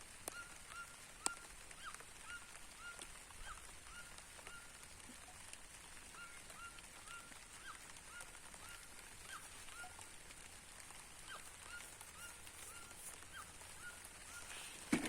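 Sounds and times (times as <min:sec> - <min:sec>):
rain hiss: 0:00.0 - 0:15.0
bird honking calls: 0:11.2 - 0:15.0.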